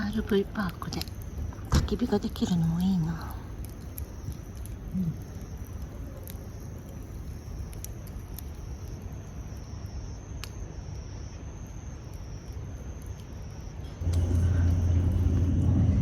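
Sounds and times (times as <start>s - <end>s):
steady high-pitched tone: 13.8s - 16.0s
low rumble: 13.9s - 16.0s.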